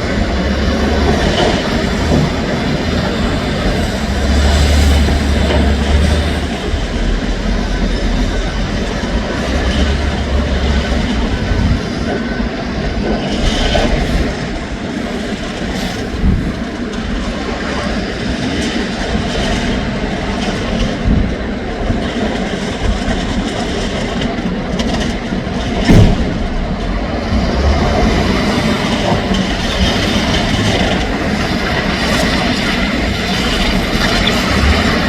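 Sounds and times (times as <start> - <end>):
sharp bang: 25.8 - 26.8.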